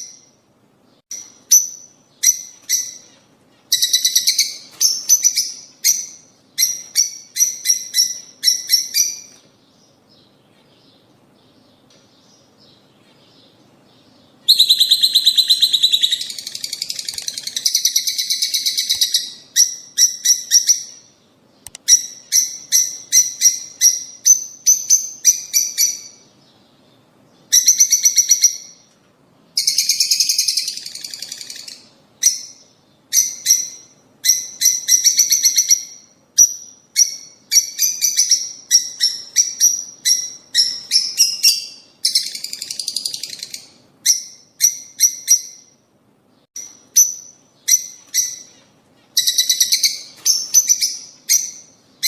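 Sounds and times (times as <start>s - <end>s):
birds chirping: 0.0s - 52.0s.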